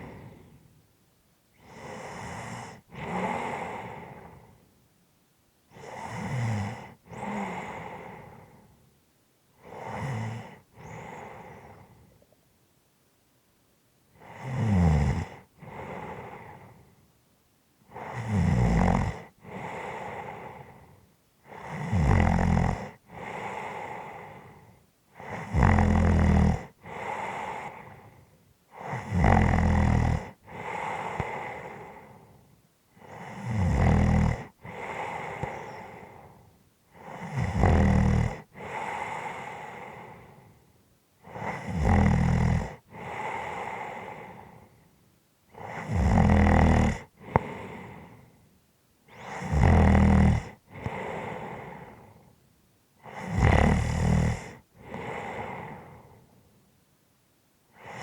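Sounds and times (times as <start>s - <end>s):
person snoring: 1.6s - 4.4s, 5.7s - 8.6s, 9.6s - 11.9s, 14.2s - 16.8s, 17.9s - 20.8s, 21.4s - 24.6s, 25.2s - 28.1s, 28.7s - 32.3s, 33.0s - 40.4s, 41.2s - 44.6s, 45.5s - 48.2s, 49.1s - 52.2s, 53.0s - 56.2s, 57.8s - 58.0s.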